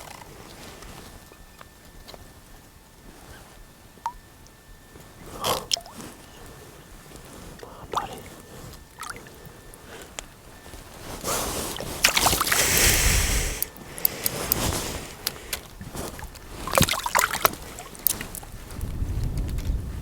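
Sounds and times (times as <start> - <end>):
water splashing and sloshing: 8.0 - 9.4, 15.8 - 18.4
sharp clicks: 12.1 - 15.6.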